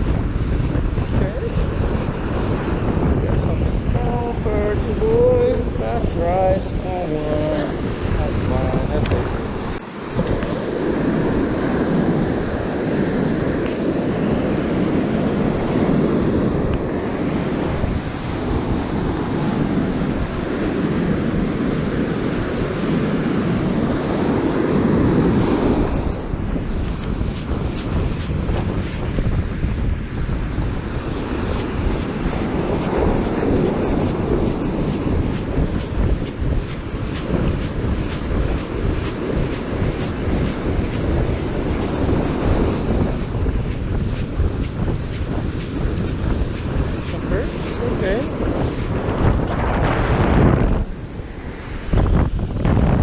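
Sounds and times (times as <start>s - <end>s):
ocean surf washing ashore: 0.0s - 53.0s
wind buffeting microphone: 0.0s - 53.0s.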